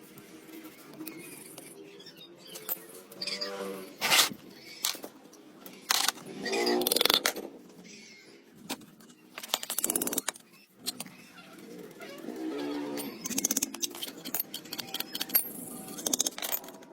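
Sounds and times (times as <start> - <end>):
short squeaky scrapes: 2.5 - 4.3.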